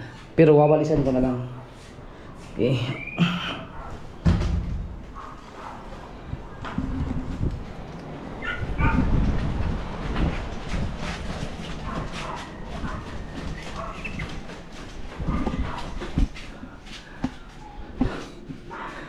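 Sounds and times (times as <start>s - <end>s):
dog barking: 3.6s - 4.1s, 5.1s - 6.1s, 8.4s - 9.1s, 11.8s - 14.3s, 15.2s - 16.0s
bumps and knocks of handling: 10.1s - 18.6s.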